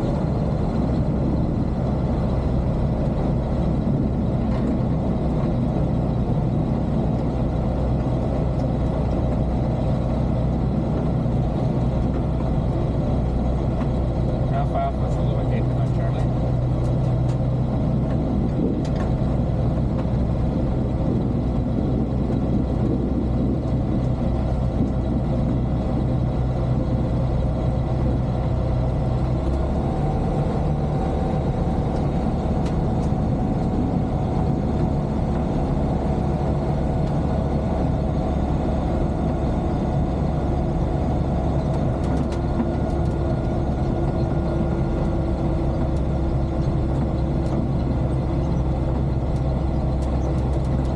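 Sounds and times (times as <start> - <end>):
light aircraft engine droning: 0.0 - 50.9.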